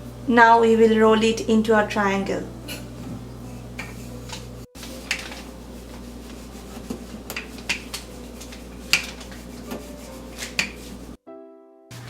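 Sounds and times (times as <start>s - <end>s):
steady low hum: 0.0s - 10.2s
rolling pin rubbing on dough: 3.4s - 11.2s.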